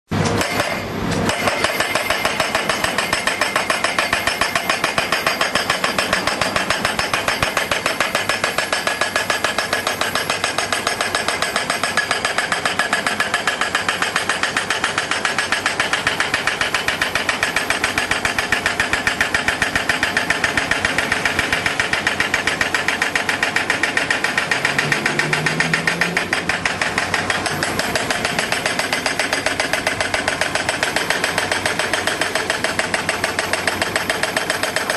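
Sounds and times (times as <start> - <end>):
rig engine running: 12.2 - 34.9.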